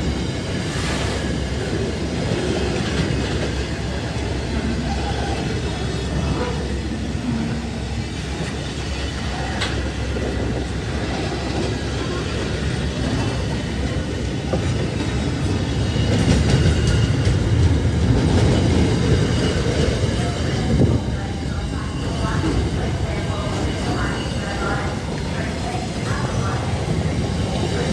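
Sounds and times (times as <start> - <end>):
freight train wheels rumbling: 0.0 - 27.9.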